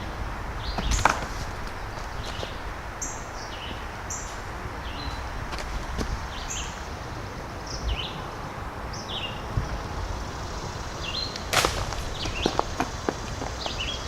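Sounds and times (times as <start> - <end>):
outdoor background hiss: 0.0 - 14.0
sharp crack: 0.8 - 2.5, 11.3 - 13.0
bird chirping: 1.8 - 5.4, 6.0 - 14.0.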